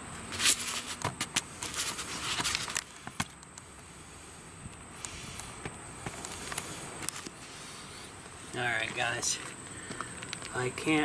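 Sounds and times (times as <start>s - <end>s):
camera handling rustling: 0.4s - 3.4s, 5.4s - 7.4s.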